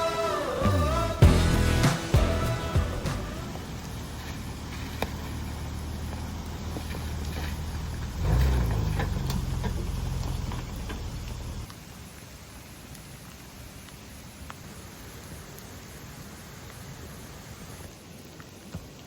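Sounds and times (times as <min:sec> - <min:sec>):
vehicle engine while driving: 0:01.0 - 0:11.7.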